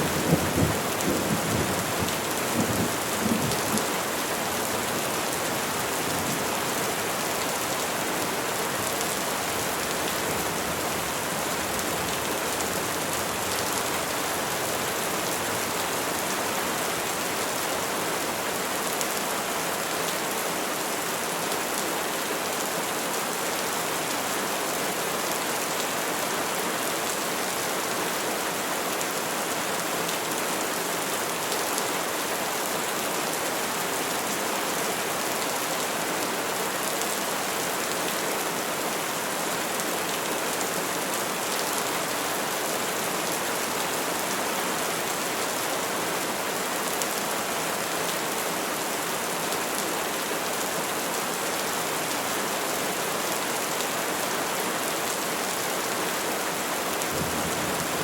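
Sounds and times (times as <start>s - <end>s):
rain pattering on leaves: 39.5s - 58.0s.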